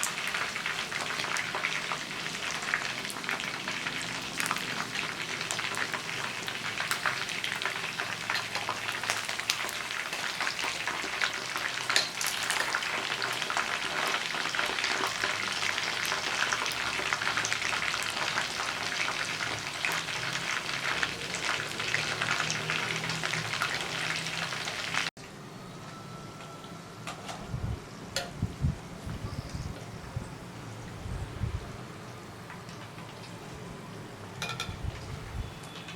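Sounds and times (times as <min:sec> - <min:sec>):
chicken wings sizzling in a pan: 0:00.0 - 0:25.1.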